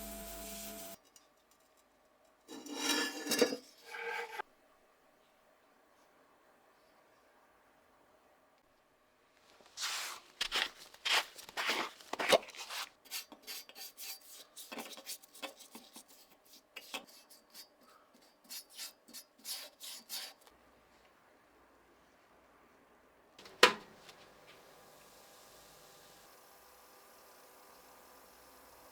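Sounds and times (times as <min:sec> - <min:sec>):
hand rubbing and scraping: 0:02.5 - 0:04.4, 0:09.6 - 0:20.5.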